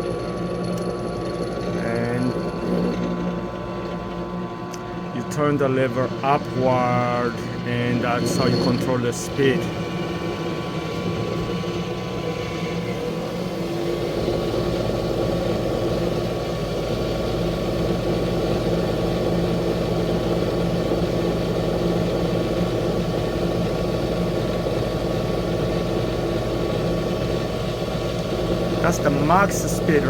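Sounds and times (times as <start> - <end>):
drill press motor hum: 0.0 - 30.0.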